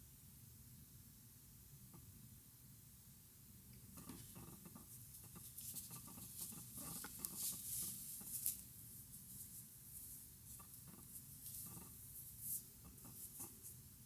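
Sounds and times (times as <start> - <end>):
crochet hook scratching yarn: 4.0 - 13.9.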